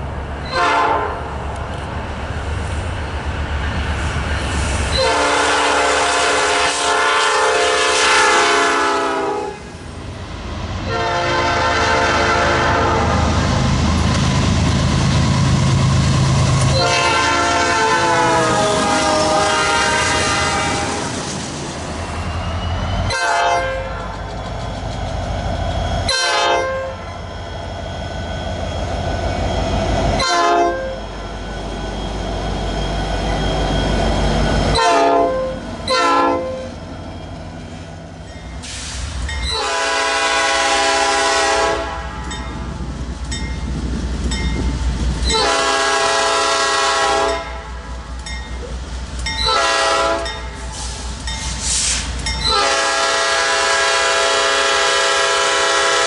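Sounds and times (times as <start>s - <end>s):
low train running noise: 0.0s - 56.0s
locomotive horn blasts: 0.5s - 1.3s, 4.9s - 9.6s, 10.9s - 13.2s, 16.7s - 21.1s, 23.1s - 24.0s, 26.1s - 27.0s, 30.2s - 31.0s, 34.7s - 36.8s, 39.5s - 42.2s, 45.3s - 47.7s, 49.4s - 50.4s, 52.4s - 56.0s.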